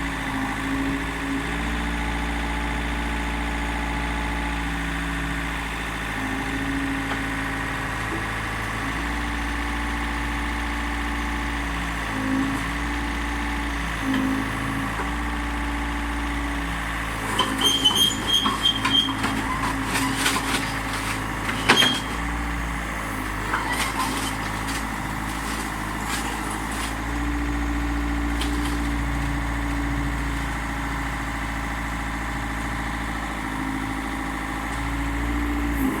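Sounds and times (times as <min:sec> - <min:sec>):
excavator diesel engine running: 0:00.0 - 0:36.0
metal clanks and squeals: 0:17.2 - 0:22.4, 0:23.3 - 0:27.0.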